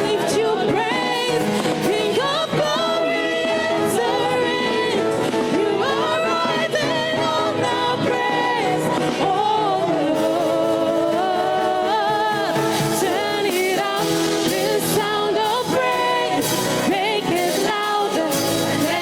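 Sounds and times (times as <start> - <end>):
live band accompaniment: 0.0 - 19.0
solo voice singing: 0.0 - 19.0.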